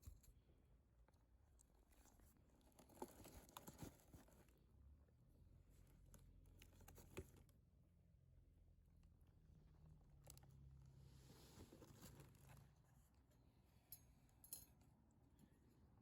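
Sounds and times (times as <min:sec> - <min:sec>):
faint low hum: 0:00.0 - 0:16.0
soft clicks and rustles: 0:01.1 - 0:04.6.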